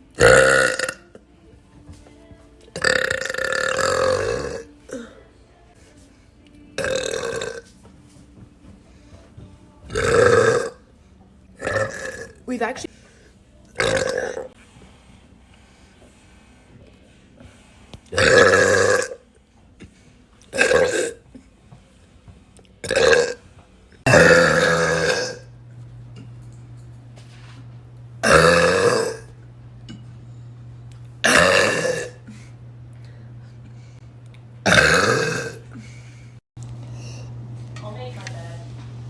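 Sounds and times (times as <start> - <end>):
woman belching: 0.2 - 1.2, 2.8 - 5.1, 6.8 - 7.7, 9.9 - 10.8, 11.6 - 12.4, 13.8 - 14.5, 18.2 - 19.2, 20.5 - 21.2, 22.8 - 23.4, 24.1 - 25.5, 28.2 - 29.3, 31.2 - 32.2, 34.6 - 35.7.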